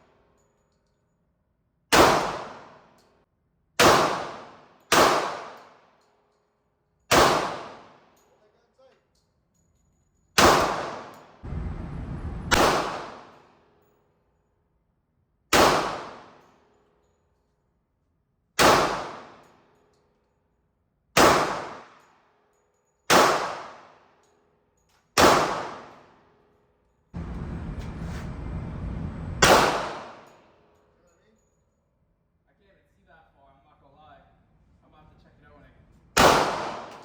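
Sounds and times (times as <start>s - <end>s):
single gunshots: 1.9s - 2.7s, 3.8s - 5.6s, 7.1s - 7.8s, 10.4s - 11.1s, 11.7s - 13.3s, 15.5s - 16.2s, 18.6s - 19.3s, 21.2s - 21.8s, 23.1s - 23.8s, 25.2s - 25.9s, 29.4s - 30.3s, 36.2s - 37.0s.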